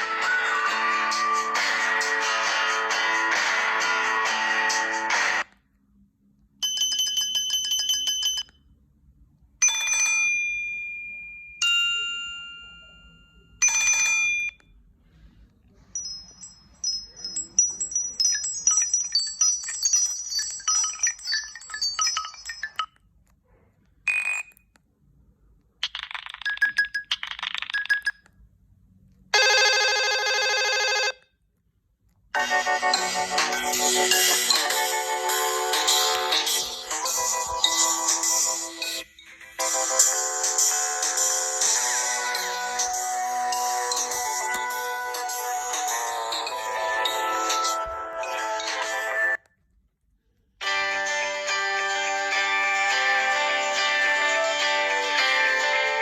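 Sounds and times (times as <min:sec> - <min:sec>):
chimes ringing: 0:16.0 - 0:23.0.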